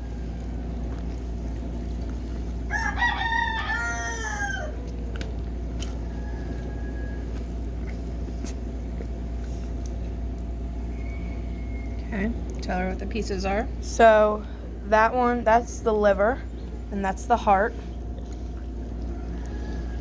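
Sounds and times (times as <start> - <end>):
rooster crowing: 2.7 - 4.9, 6.0 - 7.5, 11.0 - 12.0, 19.1 - 20.0.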